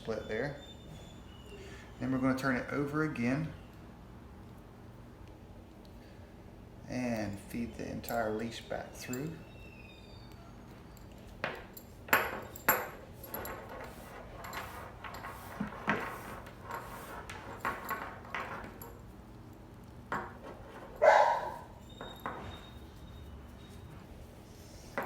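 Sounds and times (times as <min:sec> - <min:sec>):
dog barking: 0:21.0 - 0:21.7.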